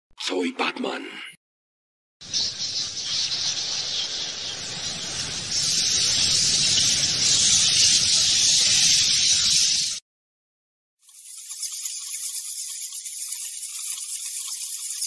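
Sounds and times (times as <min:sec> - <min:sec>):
bats hissing chatter: 0:02.2 - 0:10.0, 0:11.0 - 0:15.0.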